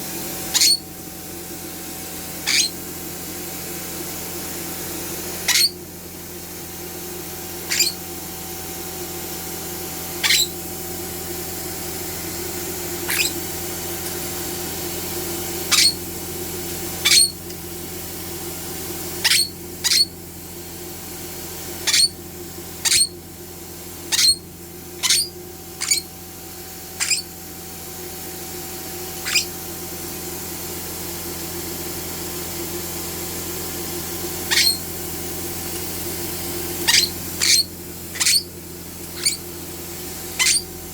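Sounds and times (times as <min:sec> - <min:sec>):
vacuum cleaner humming: 0:00.0 - 0:22.8, 0:23.4 - 0:40.9
pet squeaking: 0:00.5 - 0:00.8, 0:02.4 - 0:02.8, 0:05.5 - 0:05.8, 0:07.6 - 0:08.1, 0:10.2 - 0:10.6, 0:13.0 - 0:13.5, 0:15.7 - 0:16.0, 0:17.0 - 0:17.4, 0:19.2 - 0:20.1, 0:21.9 - 0:22.2, 0:22.8 - 0:23.2, 0:24.1 - 0:24.4, 0:25.0 - 0:26.2, 0:26.9 - 0:27.4, 0:29.2 - 0:29.6, 0:34.5 - 0:34.9, 0:36.8 - 0:38.5, 0:39.1 - 0:39.5, 0:40.3 - 0:40.8.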